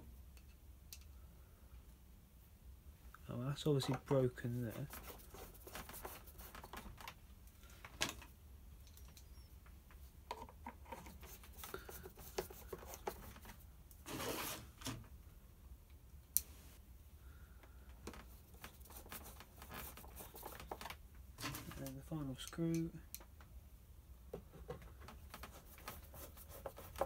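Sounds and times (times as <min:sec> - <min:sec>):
rustling noise: 0:03.6 - 0:08.0, 0:10.8 - 0:15.1, 0:18.1 - 0:22.1.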